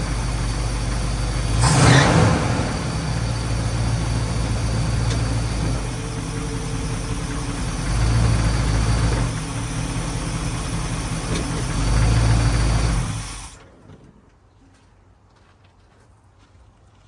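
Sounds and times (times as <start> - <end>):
engine idling and revving: 0.0 - 13.6.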